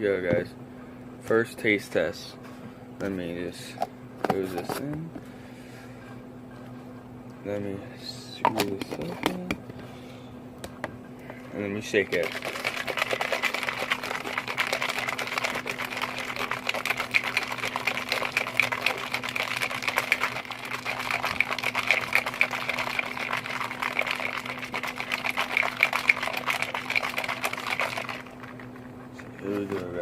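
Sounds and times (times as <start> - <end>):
shaker cup liquid sloshing and rattling: 8.5 - 9.6, 11.8 - 30.0.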